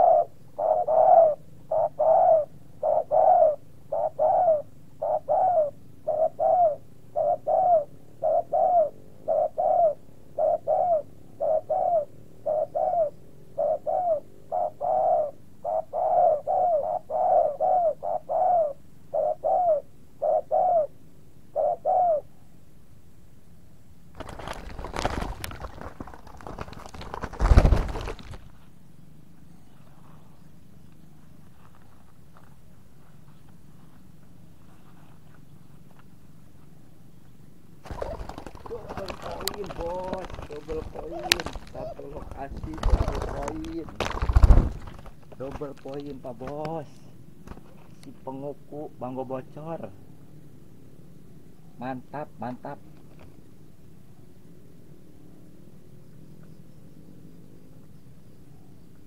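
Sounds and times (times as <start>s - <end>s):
dove cooing: 0.0s - 22.5s, 24.2s - 28.5s, 37.8s - 47.2s
rustling noise: 24.1s - 28.8s, 31.2s - 36.7s, 37.8s - 46.6s.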